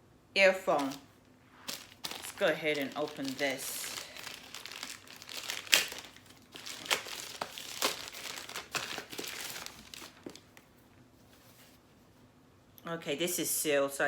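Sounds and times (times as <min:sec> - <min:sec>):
plastic packaging crinkling: 0:00.7 - 0:10.7.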